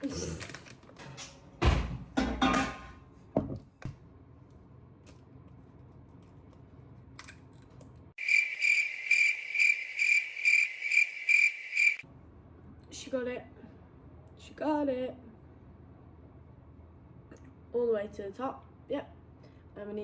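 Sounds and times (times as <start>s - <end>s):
cricket chirping sound effect: 8.2s - 12.0s.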